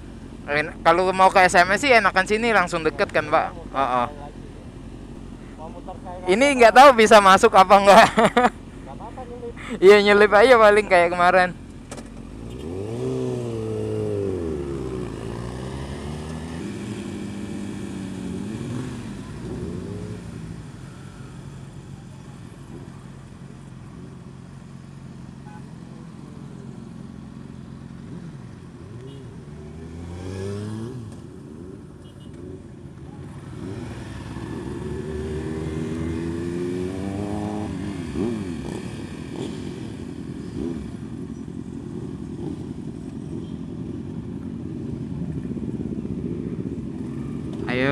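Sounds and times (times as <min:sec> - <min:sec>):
motorcycle engine revving: 0:10.2 - 0:23.2, 0:25.4 - 0:44.1.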